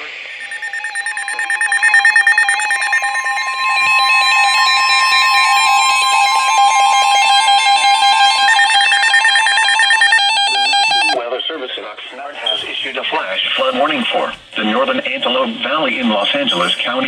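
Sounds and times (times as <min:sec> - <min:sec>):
buzzing data bursts: 0:00.3 - 0:11.2
steady warning alarm tone: 0:00.3 - 0:11.2
tone stepping between pitches: 0:00.3 - 0:11.2.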